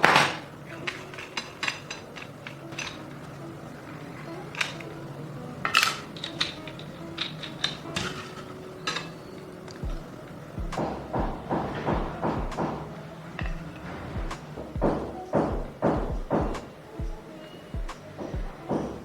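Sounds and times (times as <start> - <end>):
faint steady hum: 0.0 - 19.0
metal parts clinking: 5.6 - 9.1.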